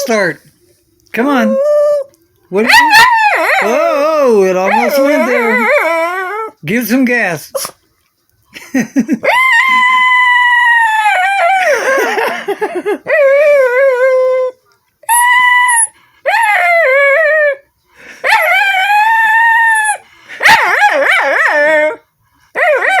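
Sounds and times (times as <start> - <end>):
dog howling and whining: 1.2 - 6.6, 9.2 - 12.1, 13.0 - 23.0.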